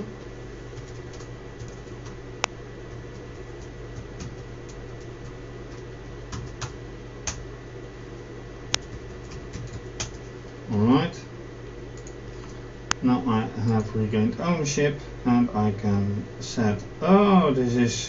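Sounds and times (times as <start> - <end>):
low electrical hum: 0.0 - 18.0
keyboard and mouse clicks: 12.0 - 12.6.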